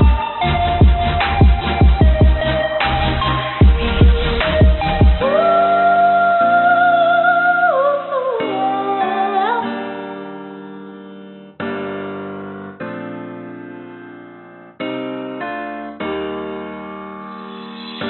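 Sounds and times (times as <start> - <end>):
pop music keyboard chords: 0.0 - 14.0.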